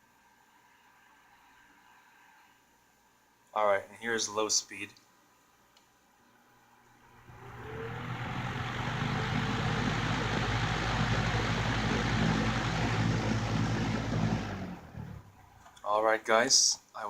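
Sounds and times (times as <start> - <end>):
fan motor whine and hum: 7.0 - 15.8
rush of air from fan: 7.2 - 15.4.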